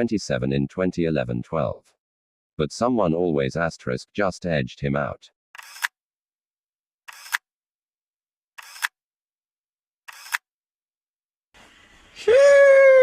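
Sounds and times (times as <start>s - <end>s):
camera shutter clicking: 5.6s - 5.9s, 7.1s - 7.4s, 8.6s - 9.0s, 10.1s - 10.4s.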